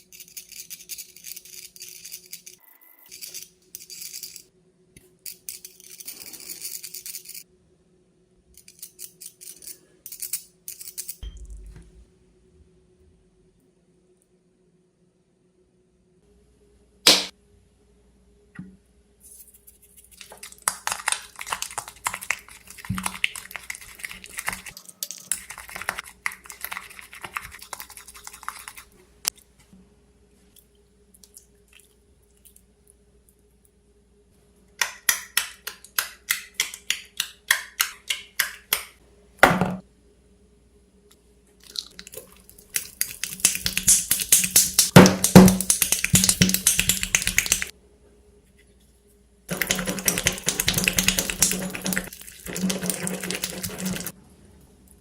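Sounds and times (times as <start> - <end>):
slime squelching: 20.0 - 28.9, 41.6 - 47.7.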